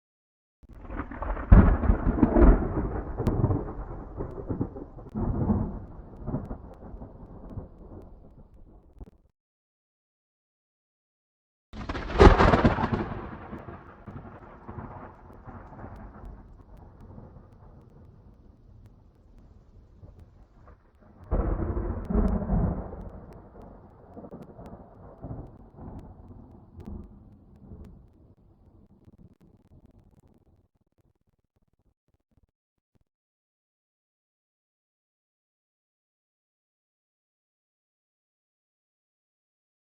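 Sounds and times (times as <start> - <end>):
thunder rumbling and cracking: 0.7 - 9.1, 11.8 - 30.1.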